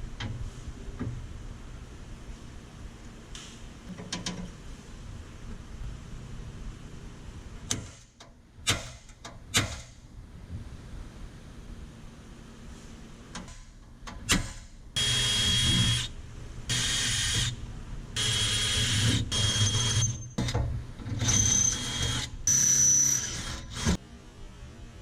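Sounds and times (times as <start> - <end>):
power drill whining: 15.0 - 16.1, 16.7 - 17.6, 18.2 - 20.2, 21.2 - 24.0.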